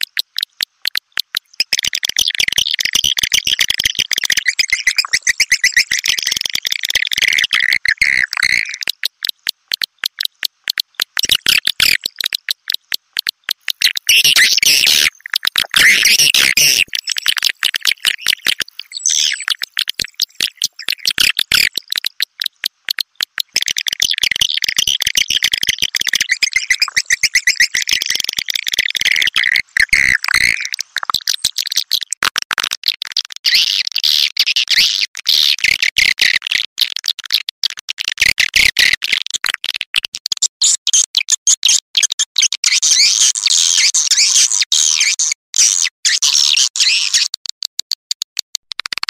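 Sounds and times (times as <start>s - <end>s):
swiftlet chirps and clicks: 0.0s - 32.1s.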